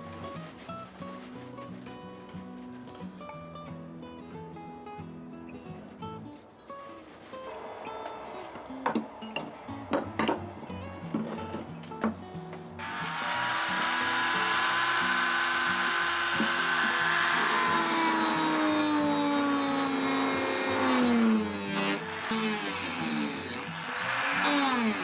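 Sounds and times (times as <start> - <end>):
background music: 7.0 - 25.0
power tool running under load: 12.7 - 25.0.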